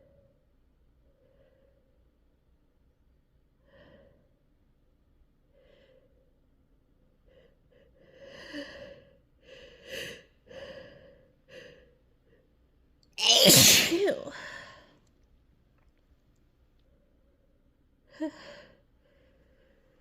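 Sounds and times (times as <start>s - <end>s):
woman gasping before sneeze: 13.2s - 14.9s.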